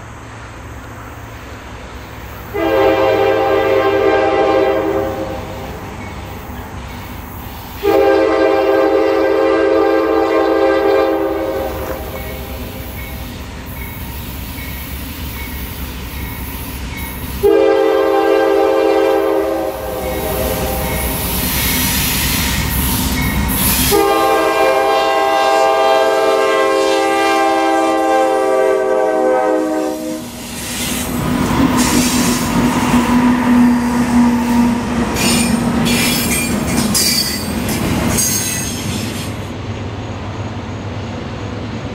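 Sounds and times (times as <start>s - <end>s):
rumble of train passing: 0.0s - 41.9s
locomotive air horn blasts: 2.5s - 5.7s, 7.8s - 12.6s, 17.4s - 21.2s, 23.7s - 30.4s.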